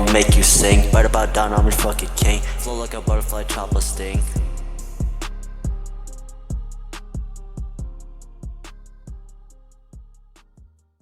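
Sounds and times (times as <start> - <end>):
drum machine kicks: 0.0 - 2.4
held bass note: 0.0 - 5.9
hip-hop beat: 0.0 - 10.8.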